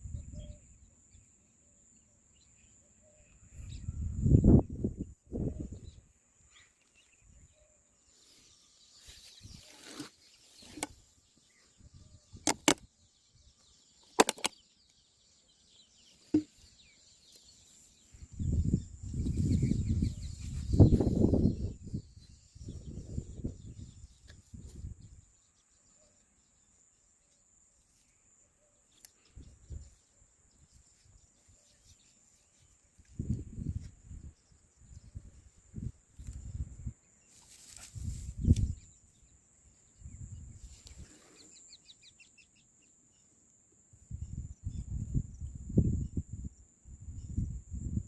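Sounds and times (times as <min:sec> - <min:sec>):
wind buffeting microphone: 0:03.5 - 0:06.1, 0:18.2 - 0:25.2, 0:33.1 - 0:37.0, 0:44.0 - 0:48.0
high insect-like chirr: 0:07.5 - 0:48.0
sharp clicks: 0:12.4 - 0:12.8, 0:14.1 - 0:14.6.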